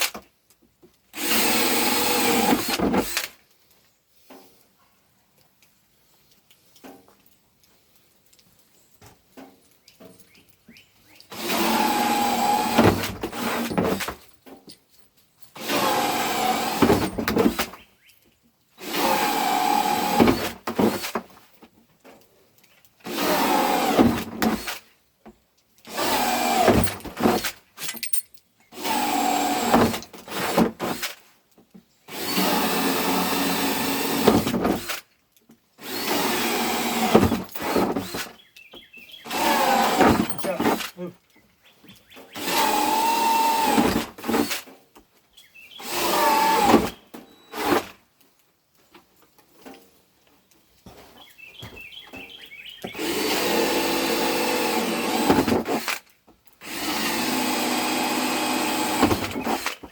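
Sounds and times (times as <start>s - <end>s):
power drill whining: 1.1s - 3.4s, 11.3s - 14.1s, 15.6s - 17.8s, 18.8s - 21.2s, 23.0s - 24.9s, 25.9s - 27.5s, 28.8s - 31.2s, 32.1s - 35.0s, 35.8s - 38.3s, 39.2s - 40.9s, 42.4s - 44.7s, 45.8s - 48.0s, 52.9s - 56.0s, 56.6s - 59.9s.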